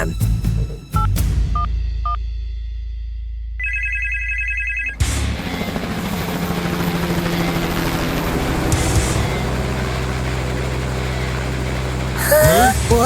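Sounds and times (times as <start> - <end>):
pulsing electronic ringing tone: 3.6 - 5.1
low drone: 5.0 - 13.0.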